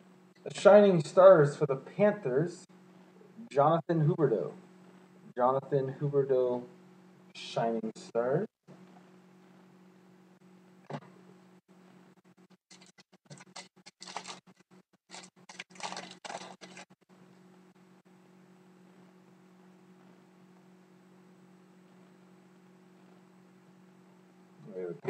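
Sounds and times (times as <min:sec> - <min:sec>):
steady low hum: 0:00.0 - 0:25.0
foil wrapper crinkling: 0:12.7 - 0:17.0.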